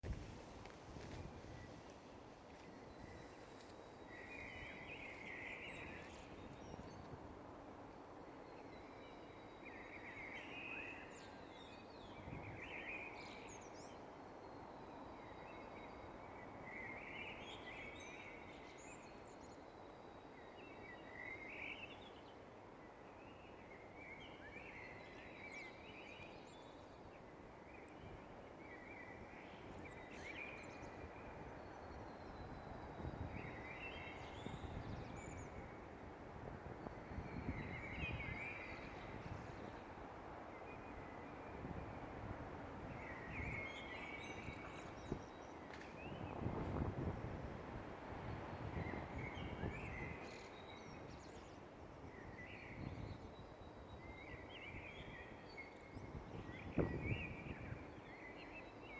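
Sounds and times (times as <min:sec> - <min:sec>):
low background noise: 0:00.0 - 0:58.9.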